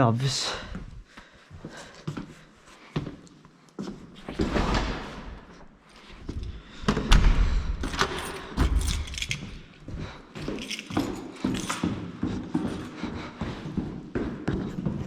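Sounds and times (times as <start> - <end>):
door thudding shut: 6.9 - 9.0.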